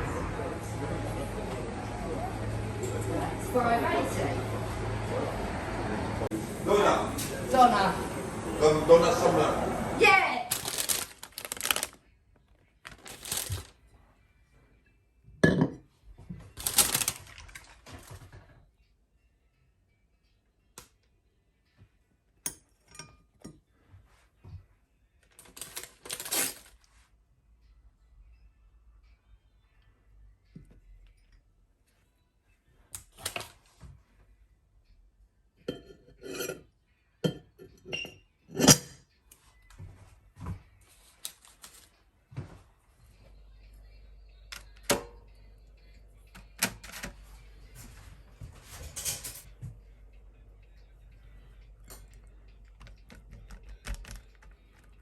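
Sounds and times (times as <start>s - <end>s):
kitchenware clattering: 15.4s - 15.9s, 35.6s - 39.0s, 48.7s - 49.6s
crockery and cutlery clinking: 22.4s - 23.7s, 35.6s - 39.0s, 48.7s - 49.7s.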